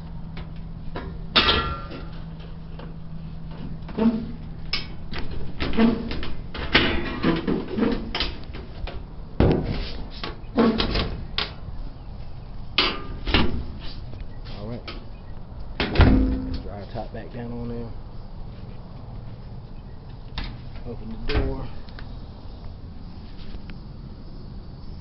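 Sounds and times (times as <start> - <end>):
sheet metal clunks and rattles: 15.8 - 16.7.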